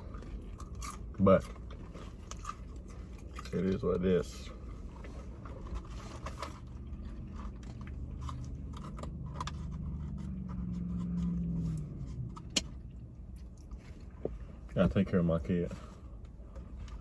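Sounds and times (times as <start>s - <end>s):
chewing food: 0.0s - 14.6s
low rumble: 4.3s - 14.9s.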